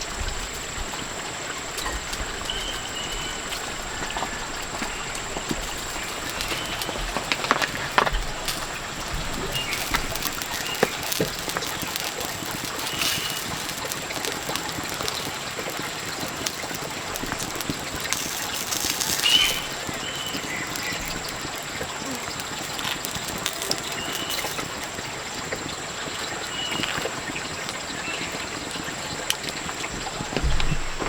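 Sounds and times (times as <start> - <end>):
rustle: 0.0 - 28.6
outdoor background hiss: 0.0 - 31.0
high bird chirps: 17.1 - 21.5.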